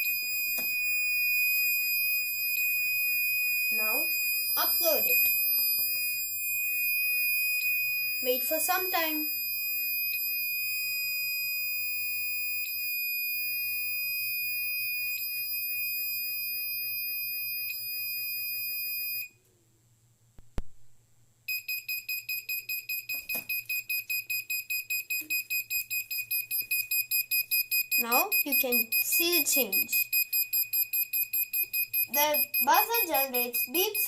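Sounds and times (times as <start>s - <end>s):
buzzer high-pitched tone: 0.0s - 19.3s, 21.5s - 34.0s
rapid short beeps: 3.3s - 6.0s, 21.5s - 34.0s.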